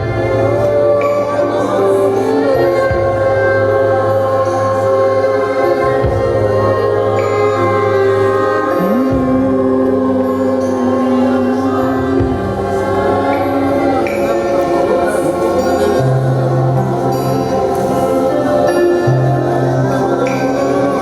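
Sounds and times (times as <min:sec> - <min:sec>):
slow worship music with choir: 0:00.0 - 0:21.0.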